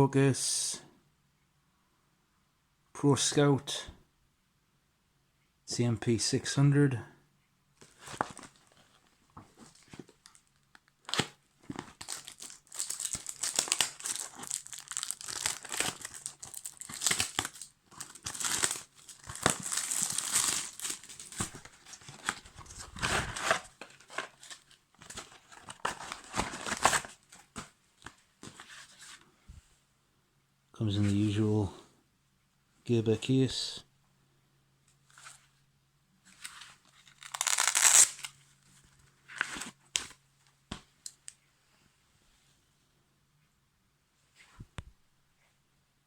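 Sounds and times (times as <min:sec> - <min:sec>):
packaging crinkling and tearing: 0:07.8 - 0:27.4, 0:36.4 - 0:38.4.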